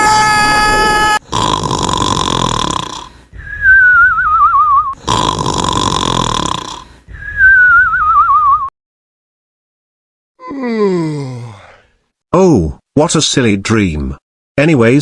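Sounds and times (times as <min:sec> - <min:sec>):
cartoon snoring with whistle: 0:01.2 - 0:08.7.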